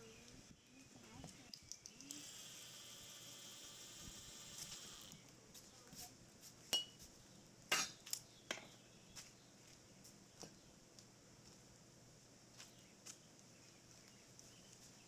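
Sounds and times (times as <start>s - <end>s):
steady high hiss: 2.1s - 5.2s.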